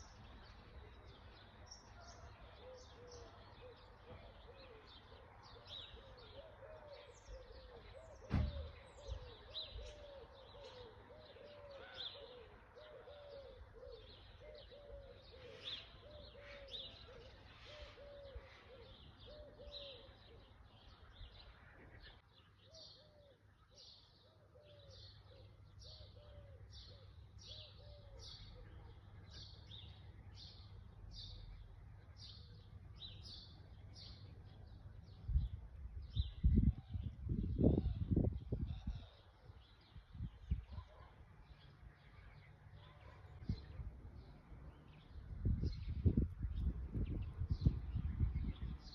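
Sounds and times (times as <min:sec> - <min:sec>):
bird low call: 0:00.0 - 0:31.6
knock: 0:08.3 - 0:08.6.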